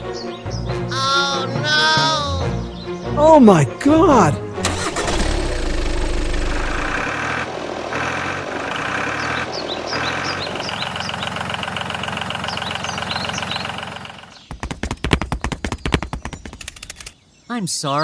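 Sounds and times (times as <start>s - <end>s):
engine running steadily: 4.6s - 7.7s.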